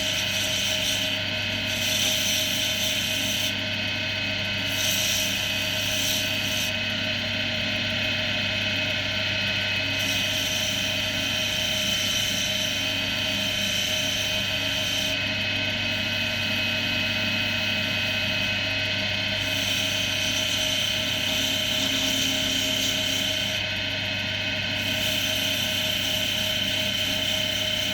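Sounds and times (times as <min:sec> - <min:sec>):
tool scraping spinning wood: 0:00.0 - 0:06.8, 0:09.8 - 0:17.0, 0:19.4 - 0:23.9, 0:24.8 - 0:27.9
wood lathe motor hum: 0:00.0 - 0:27.9.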